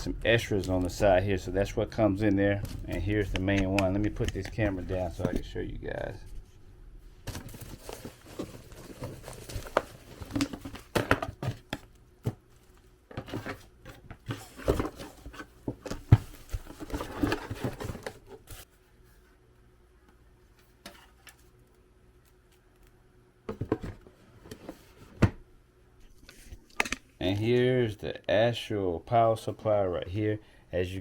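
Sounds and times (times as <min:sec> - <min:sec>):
packing rustling: 0:07.3 - 0:11.6.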